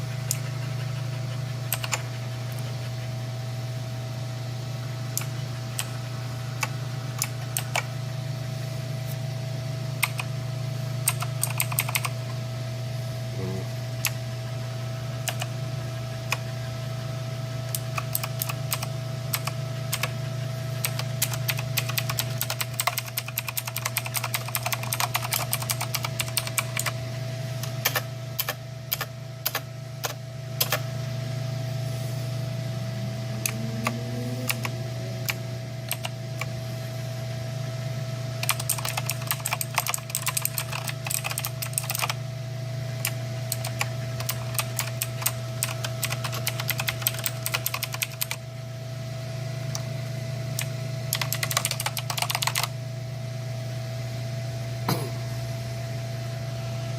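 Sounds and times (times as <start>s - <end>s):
steady low hum: 0.0s - 56.9s
mechanical keyboard typing: 1.7s - 2.0s, 6.6s - 7.9s, 10.0s - 10.3s, 11.0s - 12.2s, 15.3s - 15.5s, 17.7s - 20.2s, 20.8s - 27.0s, 27.6s - 30.8s, 34.5s - 34.7s, 35.9s - 36.1s, 38.4s - 42.2s, 43.0s - 48.4s, 50.6s - 52.7s.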